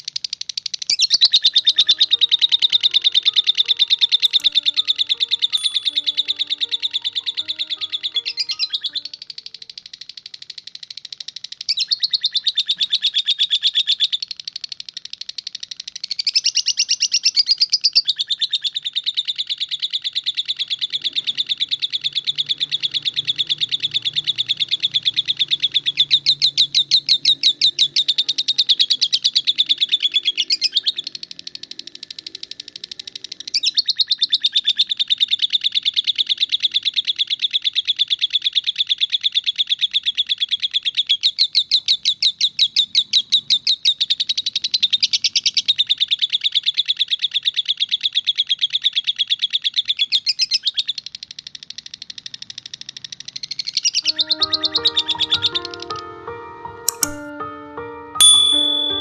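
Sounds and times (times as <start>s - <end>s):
bird chattering trill: 0.0s - 14.2s.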